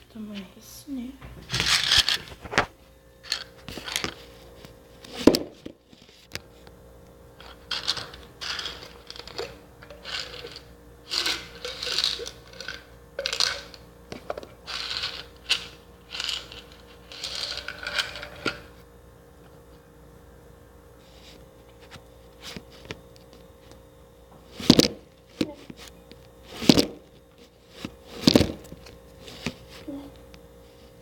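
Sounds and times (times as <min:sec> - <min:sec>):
packaging crinkling and rattling: 0:07.4 - 0:13.8.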